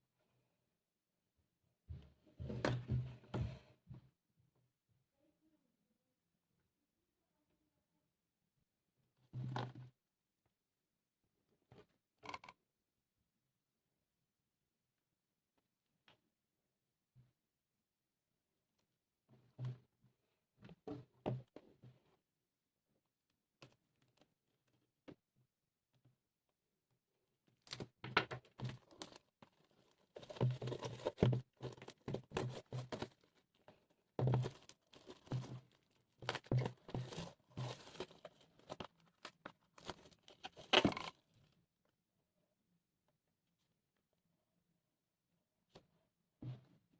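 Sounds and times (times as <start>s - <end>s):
packaging rustling and tearing: 34.4s - 40.9s.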